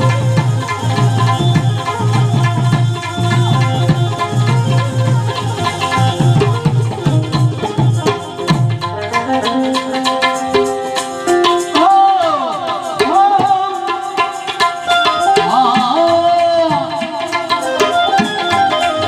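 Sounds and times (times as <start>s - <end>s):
gliding melody line: 0.0s - 11.9s
tabla playing a quick rhythm: 0.0s - 19.0s.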